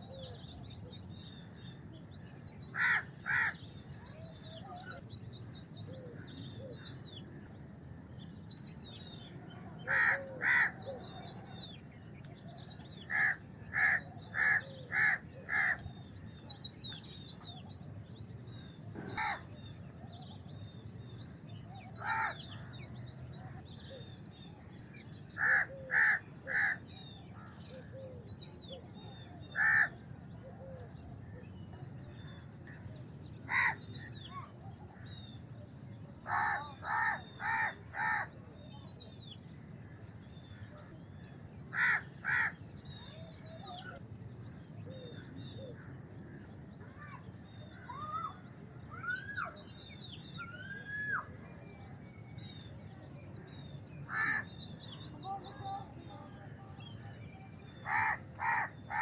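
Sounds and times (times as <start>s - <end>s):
small birds chirping: 0.0s - 59.0s
crows cawing: 2.7s - 3.7s, 9.9s - 11.0s, 13.1s - 15.8s, 19.0s - 19.5s, 22.0s - 22.5s, 25.4s - 26.8s, 29.6s - 30.0s, 33.5s - 33.8s, 36.3s - 38.3s, 41.7s - 42.6s, 54.1s - 54.5s, 57.8s - 59.0s.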